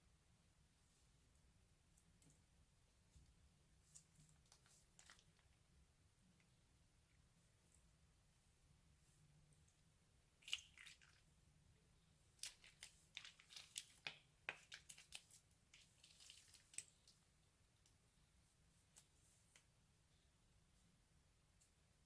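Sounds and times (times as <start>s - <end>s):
crunchy slime crackling: 10.4s - 11.3s, 12.4s - 17.2s.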